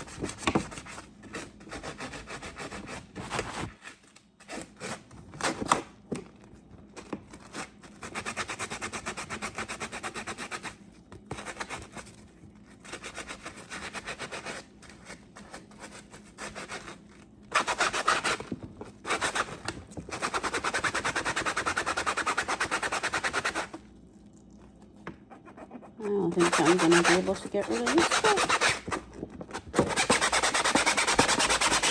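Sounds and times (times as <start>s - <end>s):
scrubbing a mesh filter: 26.2s - 28.8s.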